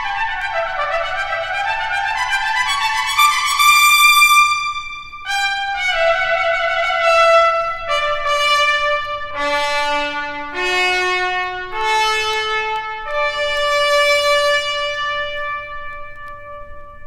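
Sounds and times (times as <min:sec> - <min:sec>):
solo trumpet playing held notes: 0:00.0 - 0:17.0.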